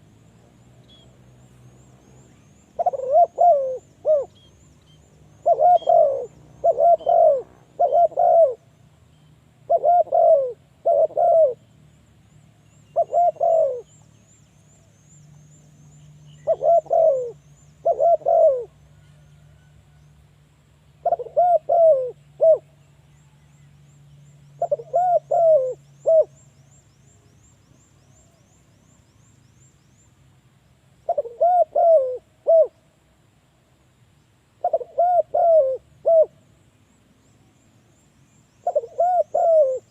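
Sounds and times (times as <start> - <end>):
dove cooing: 2.8 - 4.5, 5.4 - 8.7, 9.6 - 11.6, 12.9 - 14.0, 16.4 - 19.7, 21.0 - 22.7, 24.6 - 26.4, 31.1 - 32.8, 34.6 - 36.4, 38.6 - 39.9.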